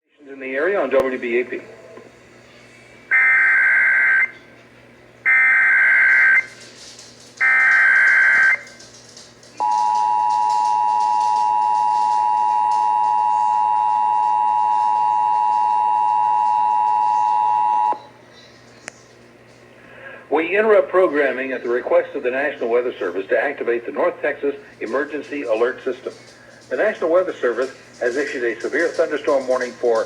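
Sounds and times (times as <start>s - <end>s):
two-tone attention signal: 9.6s - 18.1s.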